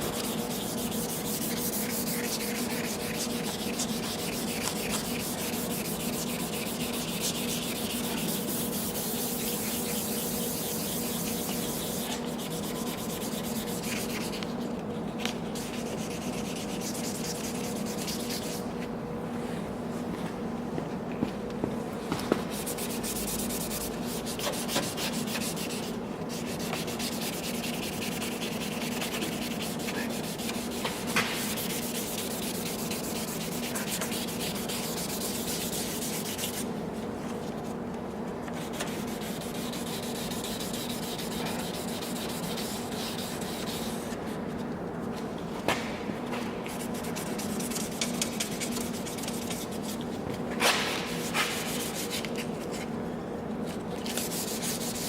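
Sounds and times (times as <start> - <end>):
sandpaper scraping hiss: 0.1 - 14.4.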